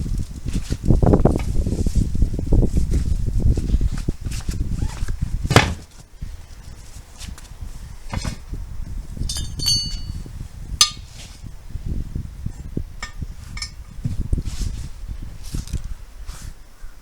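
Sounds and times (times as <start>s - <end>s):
metal tools clinking on wheel: 9.2s - 11.1s.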